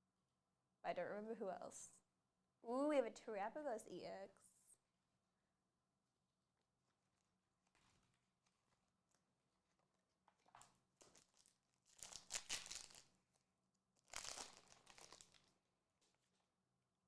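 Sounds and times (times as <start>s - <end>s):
foil wrapper crinkling: 7.6s - 13.4s, 14.0s - 16.4s.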